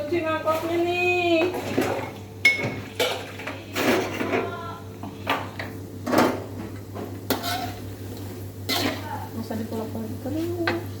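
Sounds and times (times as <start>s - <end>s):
dishes and cutlery clinking: 1.4s - 4.5s.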